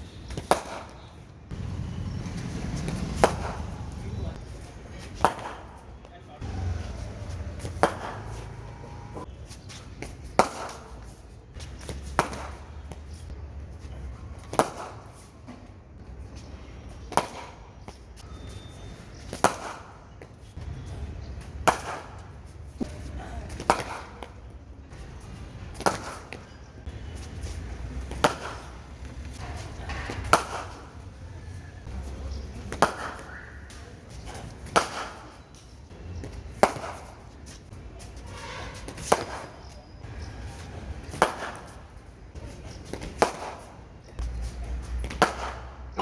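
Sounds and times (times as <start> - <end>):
cricket bat striking ball: 2.7 - 3.7, 7.6 - 8.5.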